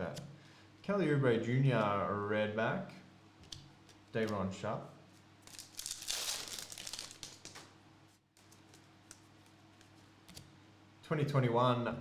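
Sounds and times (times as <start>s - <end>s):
foil wrapper crinkling: 5.4s - 7.7s, 8.4s - 10.0s.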